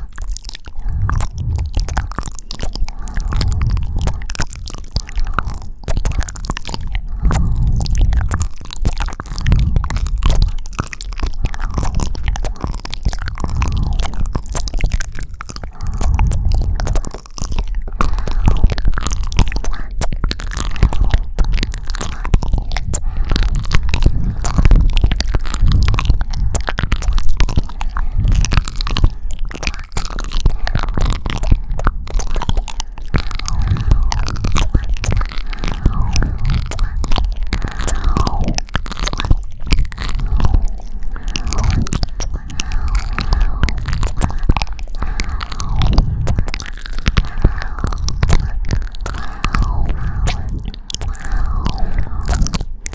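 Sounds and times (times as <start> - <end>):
wet mouth kissing and sucking: 0.0 - 52.9.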